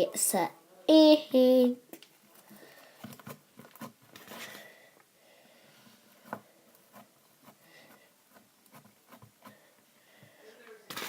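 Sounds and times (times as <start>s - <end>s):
soft slime squishes: 5.8s - 10.3s.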